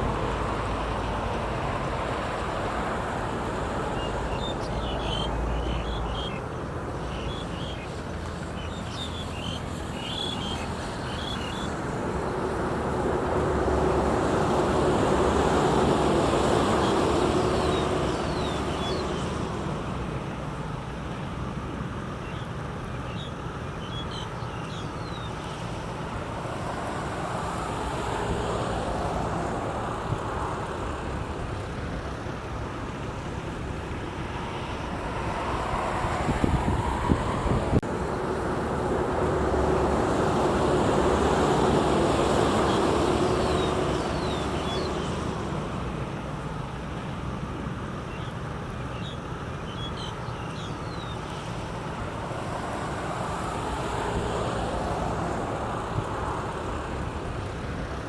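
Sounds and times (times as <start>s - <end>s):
outdoor background: 0.0s - 58.0s
vehicle passing: 26.4s - 46.0s.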